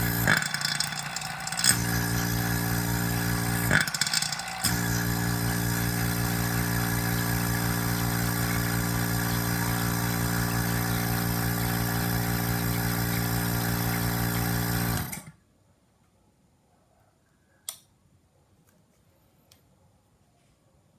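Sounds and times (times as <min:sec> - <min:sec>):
vacuum pump humming: 0:00.0 - 0:15.3.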